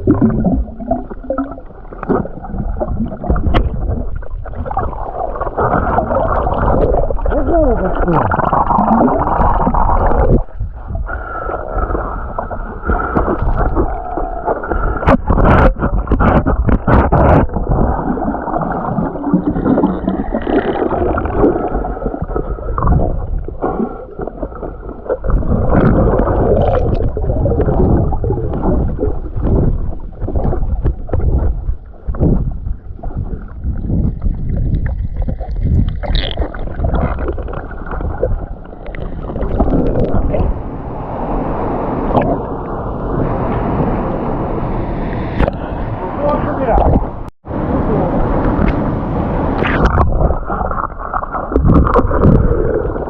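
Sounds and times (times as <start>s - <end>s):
muffled underwater water churning: 0.0s - 53.0s.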